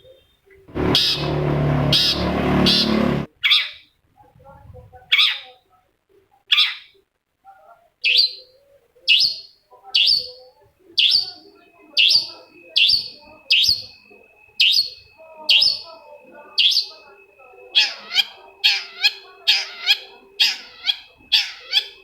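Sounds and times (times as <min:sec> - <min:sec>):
thin high tone: 0:00.7 - 0:03.3, 0:11.3 - 0:22.0
bird harsh calls: 0:00.7 - 0:03.8, 0:11.0 - 0:22.0.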